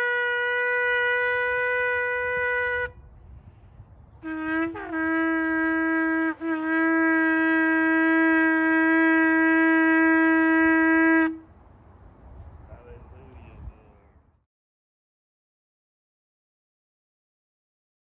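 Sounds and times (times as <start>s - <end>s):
shofar blast: 0.0s - 3.1s, 4.2s - 11.4s.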